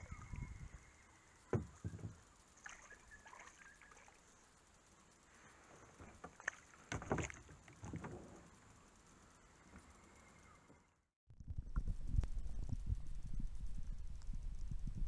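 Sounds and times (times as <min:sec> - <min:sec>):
water sounds: 0:00.0 - 0:10.7
kayak knocking: 0:01.5 - 0:02.2, 0:06.0 - 0:08.4
kayak bump: 0:06.0 - 0:08.4.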